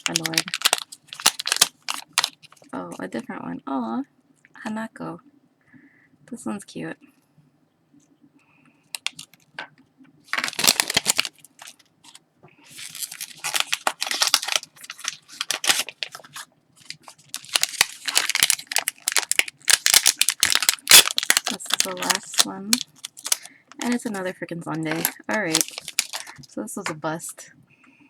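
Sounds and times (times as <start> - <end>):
packaging tearing and rustling: 0.0 - 2.7, 9.0 - 9.4, 10.3 - 26.5.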